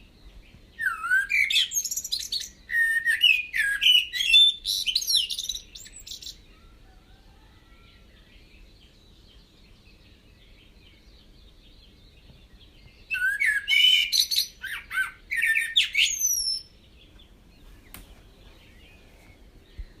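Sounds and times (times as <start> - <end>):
birds chirping: 0.0 - 20.0
bird gliding whistles: 0.8 - 6.4, 13.1 - 16.7.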